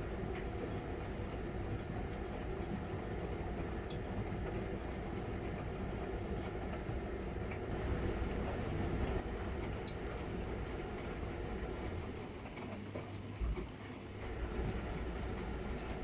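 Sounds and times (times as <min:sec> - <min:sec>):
washing machine motor hum: 0:00.0 - 0:16.0.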